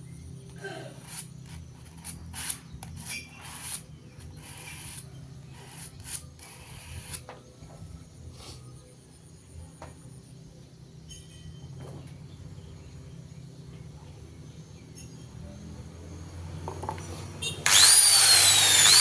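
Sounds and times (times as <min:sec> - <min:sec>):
blade scraping on sandpaper: 0:01.0 - 0:07.2, 0:17.7 - 0:19.0.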